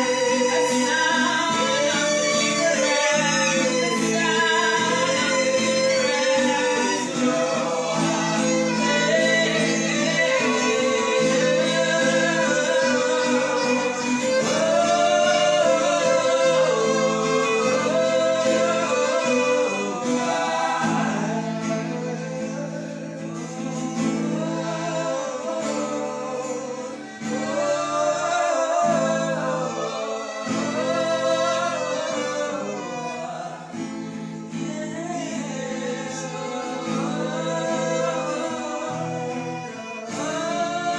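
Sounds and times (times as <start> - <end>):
guitar: 0.0 - 40.9
violin: 0.0 - 40.9.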